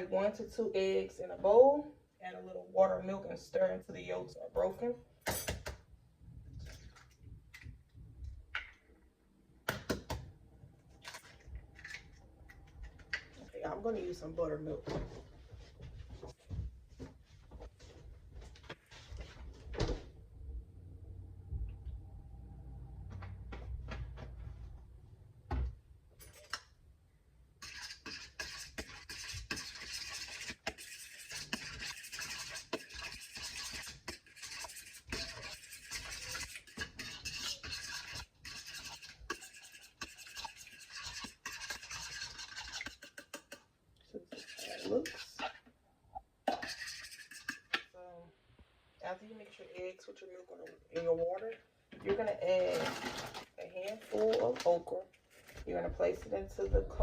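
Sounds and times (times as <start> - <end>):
utensil beating in a bowl: 27.6 - 43.6, 44.2 - 45.4.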